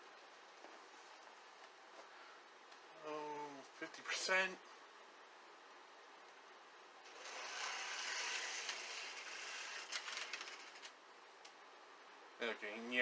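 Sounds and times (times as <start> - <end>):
model locomotive motor whirring: 7.0 - 11.0.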